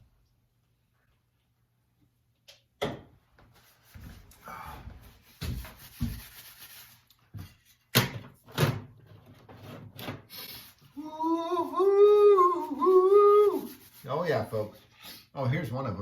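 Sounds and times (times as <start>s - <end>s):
man humming a tune: 11.0s - 13.8s.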